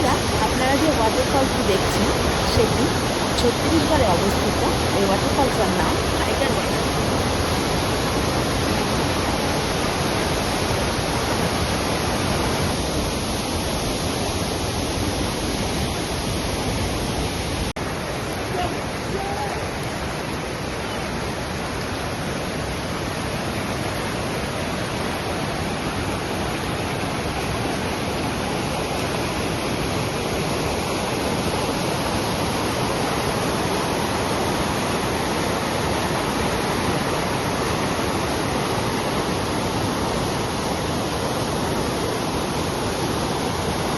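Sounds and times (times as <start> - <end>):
waterfall crashing: 0.0 - 13.2.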